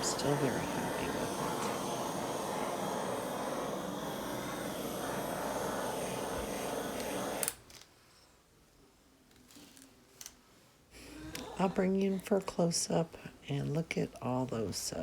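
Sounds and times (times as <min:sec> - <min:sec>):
butane torch hissing: 0:00.0 - 0:07.6
torch shut-off click: 0:00.0 - 0:07.6.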